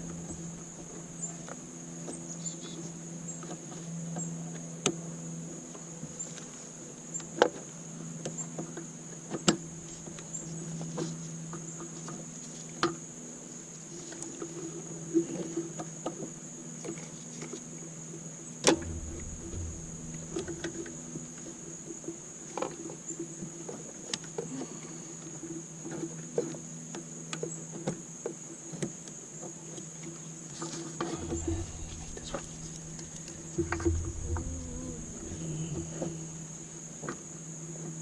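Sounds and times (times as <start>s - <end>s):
low hum: 0.0s - 1.4s, 18.7s - 21.4s, 31.1s - 36.8s
high-pitched whine: 18.7s - 21.3s, 31.2s - 36.8s.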